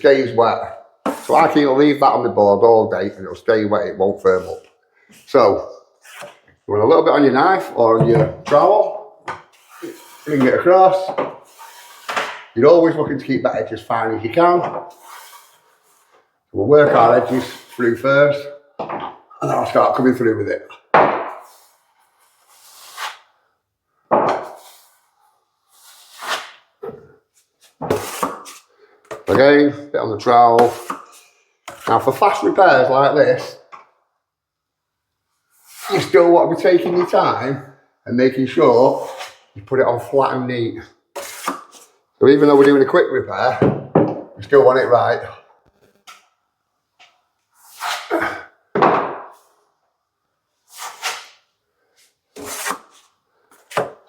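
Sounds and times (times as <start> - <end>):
trowel scraping filler on ceiling: 1.0 - 1.7, 5.9 - 6.6, 8.5 - 12.6, 14.8 - 18.2, 21.3 - 23.4, 24.4 - 29.5, 30.6 - 32.6, 35.5 - 36.2, 38.7 - 40.2, 41.1 - 42.9, 47.6 - 48.3, 50.6 - 54.0.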